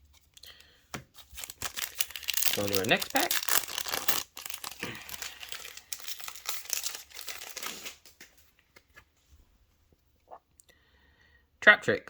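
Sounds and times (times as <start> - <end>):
wrapper being torn and crinkled: 1.1 - 8.3.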